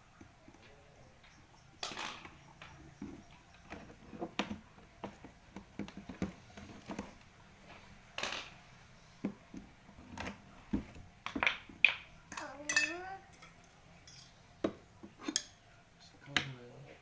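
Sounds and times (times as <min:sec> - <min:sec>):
objects knocking and clicking: 0:00.2 - 0:07.2, 0:08.2 - 0:08.6, 0:09.2 - 0:13.6.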